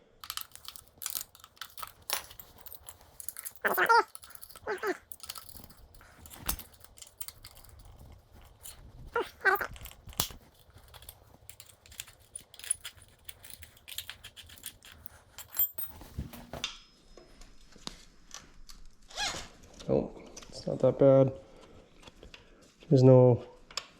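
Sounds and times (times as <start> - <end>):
hand tools clicking and clinking: 0.0 - 16.6.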